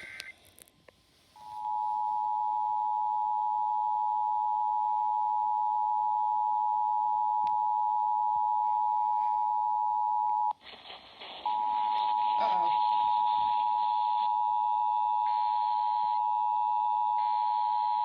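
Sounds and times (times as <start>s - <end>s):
two-tone alarm signal: 11.5s - 18.0s.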